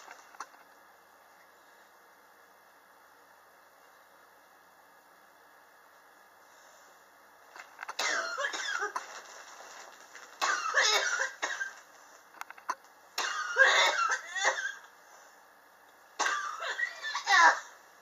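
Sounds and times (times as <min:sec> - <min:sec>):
person coughing: 0:08.0 - 0:09.0, 0:10.4 - 0:11.8, 0:13.2 - 0:14.8, 0:16.2 - 0:17.6.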